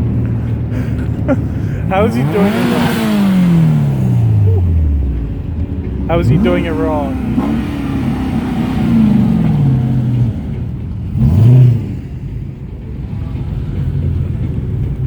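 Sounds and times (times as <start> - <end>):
car engine idling: 0.0 - 15.0
car engine revving: 0.0 - 15.0.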